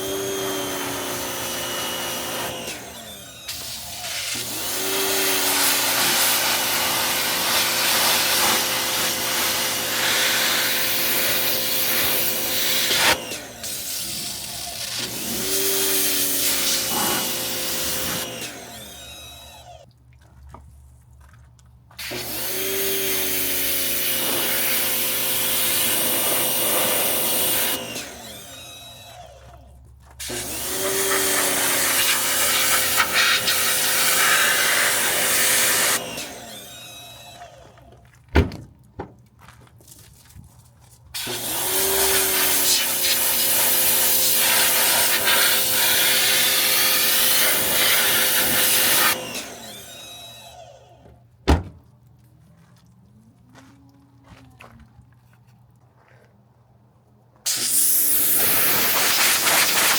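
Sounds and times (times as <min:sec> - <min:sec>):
pressure washer spraying: 0:03.5 - 0:18.2, 0:22.0 - 0:27.8, 0:30.2 - 0:36.1, 0:41.2 - 0:49.2, 0:57.5 - 0:59.9.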